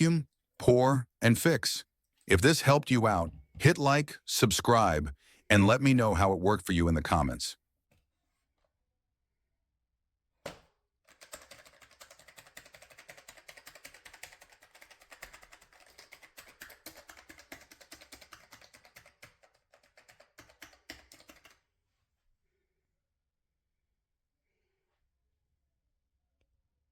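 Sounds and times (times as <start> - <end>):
fast mechanical keyboard typing: 11.1 - 21.6.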